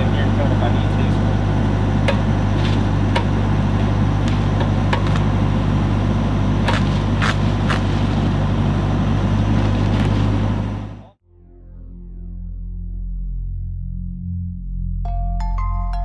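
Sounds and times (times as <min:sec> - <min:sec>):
engine humming steadily: 0:00.0 - 0:11.2.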